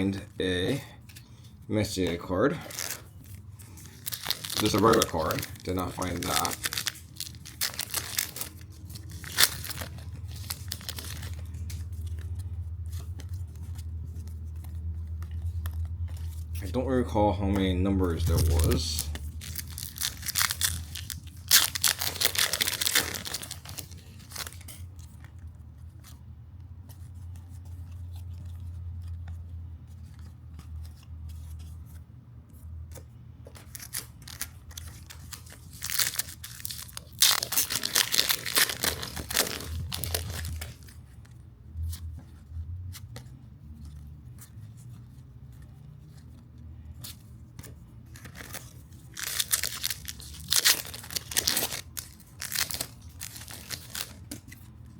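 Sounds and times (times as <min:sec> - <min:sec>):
cards clicking and rustling: 0:00.0 - 0:54.9
foil packs tearing and crinkling: 0:01.8 - 0:12.4, 0:18.0 - 0:25.1, 0:33.7 - 0:40.9, 0:48.1 - 0:54.5.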